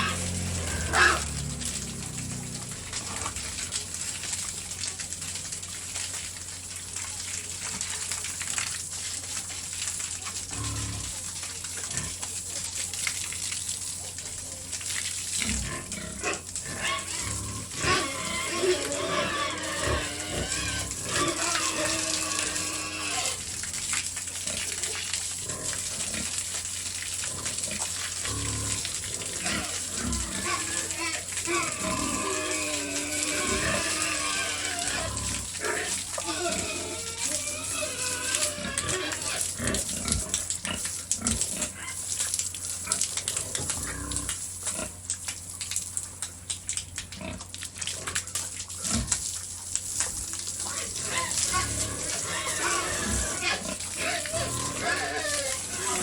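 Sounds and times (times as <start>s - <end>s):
pigs grunting: 0.0s - 4.0s, 10.4s - 12.2s, 15.4s - 23.5s, 24.4s - 26.5s, 27.2s - 45.0s, 47.2s - 49.3s, 50.5s - 56.0s
water hissing from a hose: 0.0s - 56.0s.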